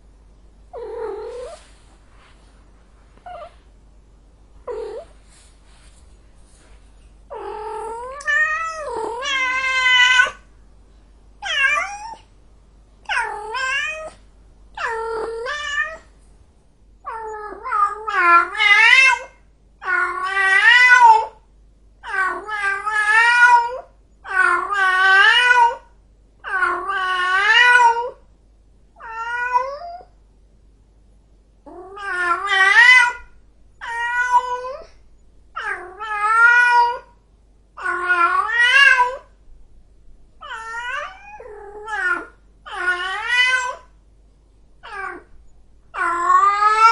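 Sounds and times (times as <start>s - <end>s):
cat yowling: 7.3s - 10.4s, 11.4s - 12.2s, 13.0s - 14.2s, 14.8s - 16.0s, 29.0s - 30.1s, 31.7s - 35.0s, 35.6s - 37.1s, 37.8s - 39.3s, 40.4s - 43.9s, 44.8s - 45.3s, 46.0s - 46.9s.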